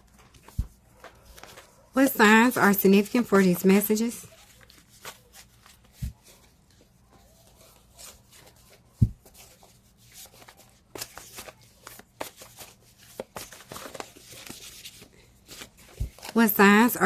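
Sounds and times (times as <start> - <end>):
cards shuffling: 4.2 - 16.5.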